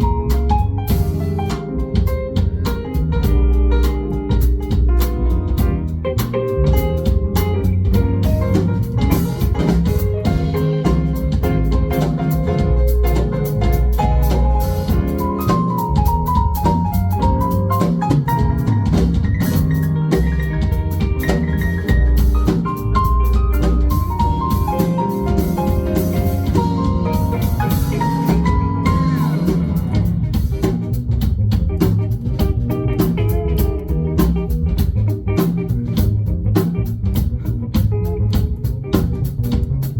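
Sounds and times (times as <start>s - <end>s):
bass guitar: 0.0s - 39.9s
drum kit groove: 0.0s - 39.9s
melodic lead line: 7.8s - 30.9s.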